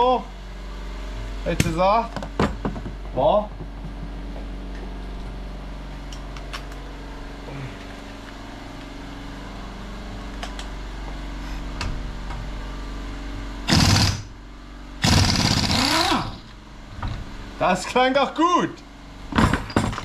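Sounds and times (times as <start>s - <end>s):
mechanical hum: 0.0s - 20.0s
impact wrench burst: 13.7s - 14.3s, 15.0s - 16.4s.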